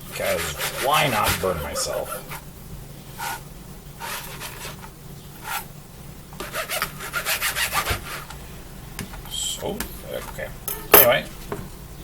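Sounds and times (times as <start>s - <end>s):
bread knife sawing: 0.0s - 2.4s, 3.2s - 3.4s, 4.0s - 5.7s, 6.4s - 8.3s.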